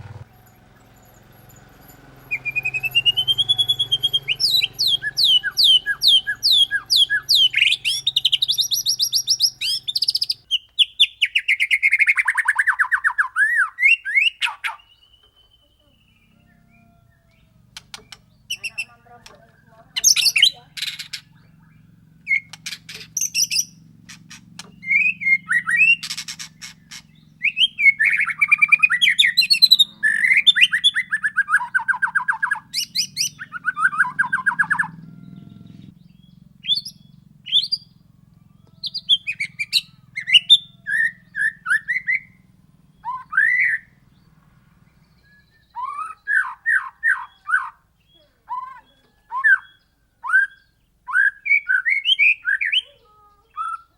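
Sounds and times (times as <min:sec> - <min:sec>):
bird singing whistles and trills: 0:02.3 - 0:53.9
faint low hum: 0:15.0 - 0:45.8.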